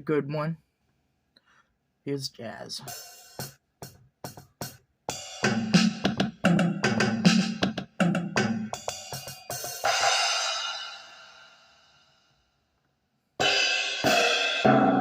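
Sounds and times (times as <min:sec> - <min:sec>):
electronic jazz drum beat: 0:02.8 - 0:11.4, 0:13.4 - 0:15.0.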